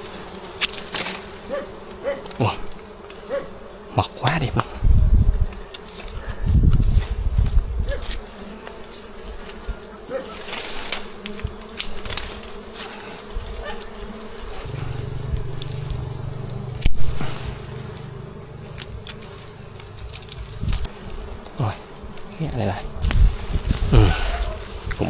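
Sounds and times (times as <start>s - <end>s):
honeybees buzzing: 0.0s - 25.0s
honeycomb clicks and rustling: 5.4s - 14.7s, 16.8s - 25.0s.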